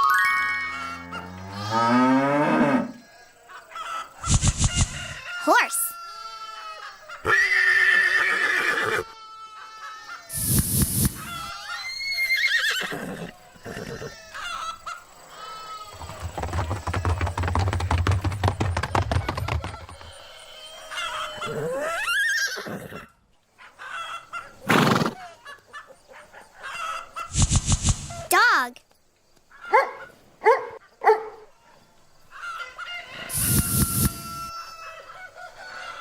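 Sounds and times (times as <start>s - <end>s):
horse neighing and whinnying: 7.2s - 9.1s, 11.3s - 14.4s, 15.8s - 23.2s, 24.6s - 25.3s, 33.2s - 34.6s.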